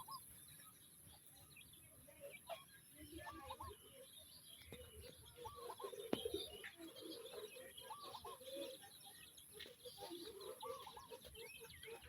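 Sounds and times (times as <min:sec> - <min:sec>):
chickens murmuring: 0:05.1 - 0:12.0.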